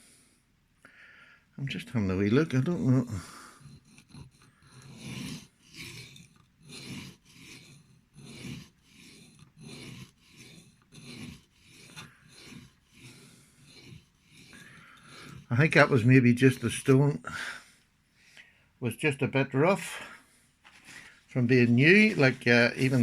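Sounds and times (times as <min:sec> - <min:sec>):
knife scraping on sharpening stone: 0:02.6 - 0:16.0.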